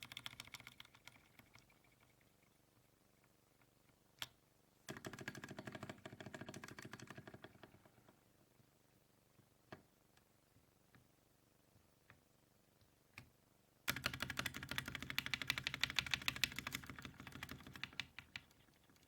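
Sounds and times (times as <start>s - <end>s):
soft keyboard keystrokes: 0.0s - 2.2s, 13.9s - 19.0s.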